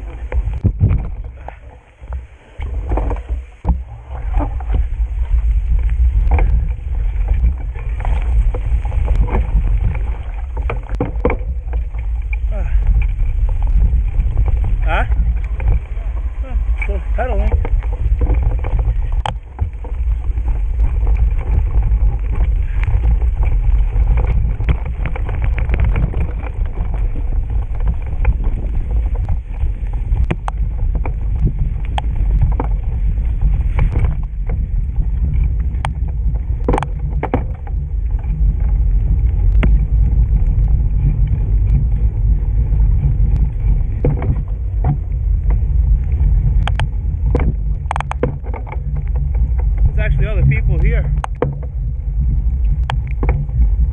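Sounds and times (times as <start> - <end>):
bike knocks and rattles: 0.0 - 53.9
wind rumble on microphone: 0.0 - 53.9.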